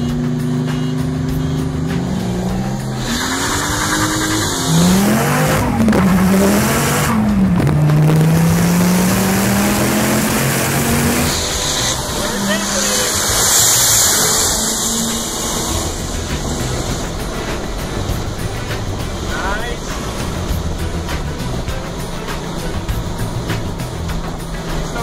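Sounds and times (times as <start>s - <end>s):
sports car engine at high speed: 0.0s - 25.0s
heavy wind rush: 11.1s - 25.0s.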